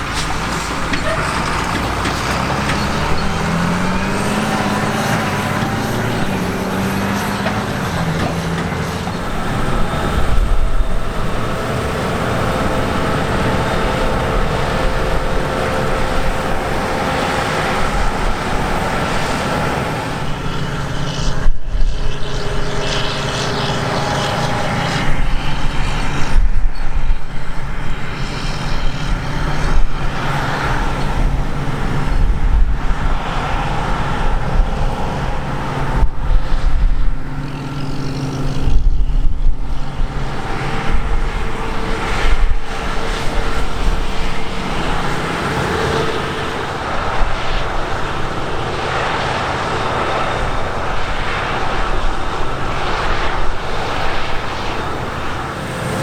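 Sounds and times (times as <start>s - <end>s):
heavy diesel machinery running: 0.0s - 56.0s.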